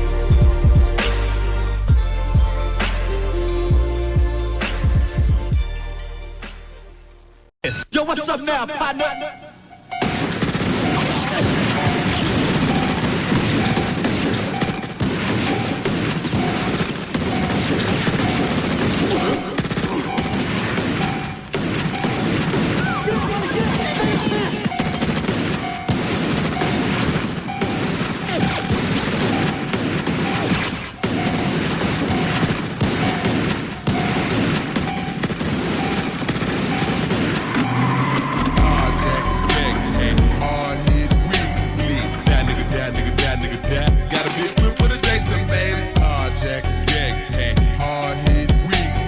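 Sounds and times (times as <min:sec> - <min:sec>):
gunfire sound effects: 0:10.0 - 0:45.4
crashes: 0:10.0 - 0:47.0.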